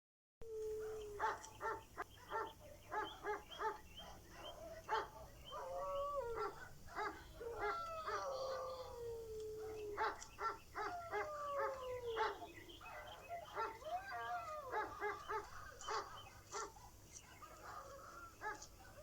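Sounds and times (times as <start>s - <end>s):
dog howling: 0.4s - 16.7s, 17.4s - 19.0s
dog barking: 0.8s - 9.0s, 9.6s - 19.0s.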